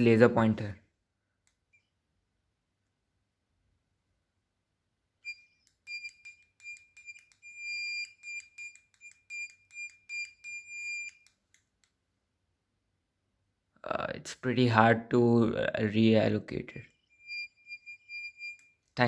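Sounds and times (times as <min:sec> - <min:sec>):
click: 0:01.4 - 0:01.9, 0:05.2 - 0:12.0, 0:18.3 - 0:19.0
buzzer beeping in high tone: 0:05.2 - 0:11.2, 0:17.0 - 0:18.8.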